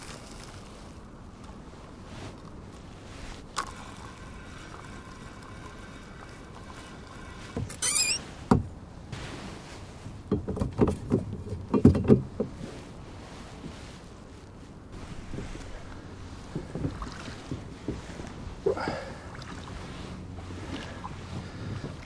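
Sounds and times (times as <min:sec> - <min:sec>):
rowboat creaking: 0:07.6 - 0:08.2
short high squeal: 0:07.8 - 0:08.2.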